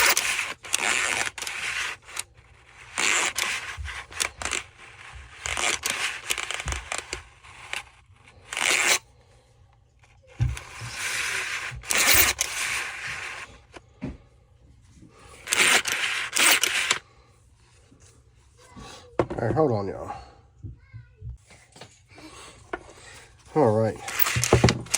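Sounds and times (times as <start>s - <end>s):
metal parts scraping and rubbing: 0.0s - 9.0s, 10.4s - 13.8s, 15.3s - 17.0s, 23.4s - 24.9s.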